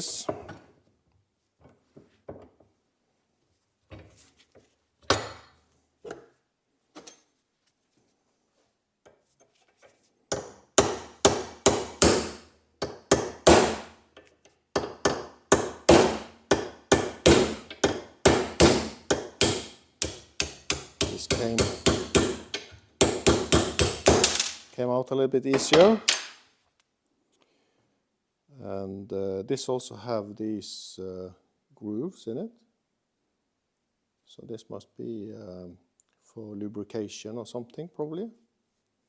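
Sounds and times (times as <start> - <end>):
hammer striking steel bolt: 14.8 - 24.6.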